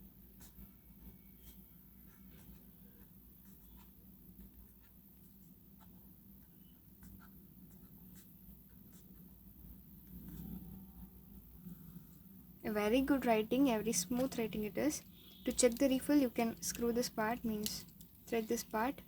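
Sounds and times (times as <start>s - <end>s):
pen scratching on paper: 0.4s - 0.7s, 1.4s - 9.3s.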